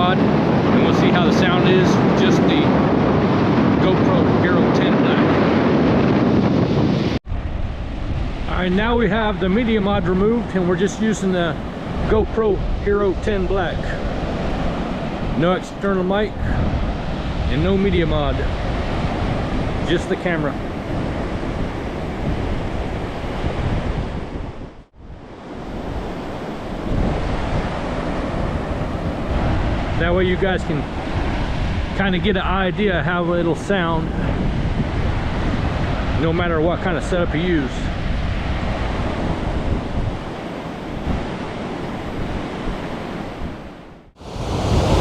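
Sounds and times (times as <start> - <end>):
surf: 0.0 - 24.4, 44.2 - 45.0
wind buffeting microphone: 0.0 - 45.0.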